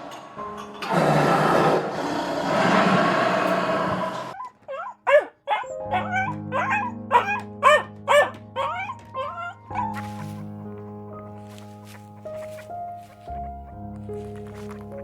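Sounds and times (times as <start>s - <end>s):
soft piano music: 0.0s - 1.0s, 4.3s - 15.0s.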